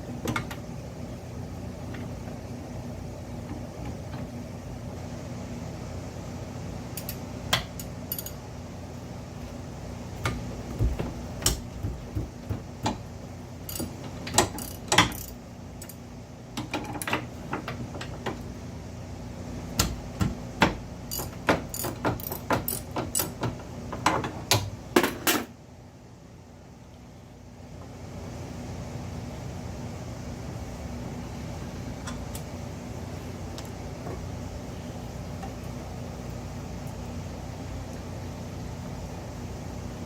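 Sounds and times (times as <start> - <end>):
steady low hum: 0.0 - 40.0
hand tools clicking on metal: 21.1 - 23.5.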